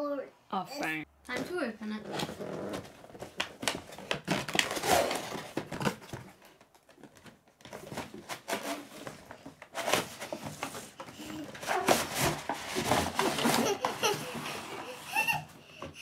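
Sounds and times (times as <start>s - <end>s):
packaging crinkling and rustling: 2.0s - 14.4s.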